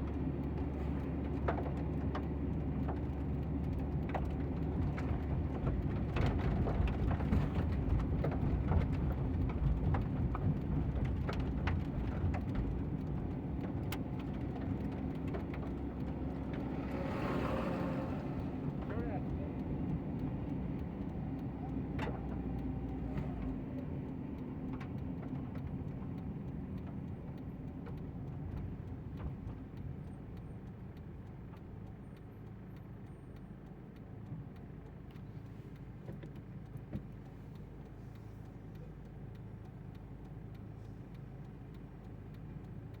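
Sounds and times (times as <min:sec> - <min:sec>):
vehicle engines rumbling: 0:00.0 - 0:43.0.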